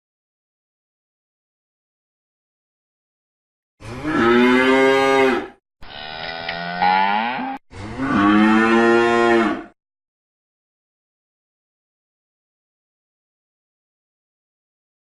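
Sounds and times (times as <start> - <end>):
cow mooing: 3.8 - 9.8.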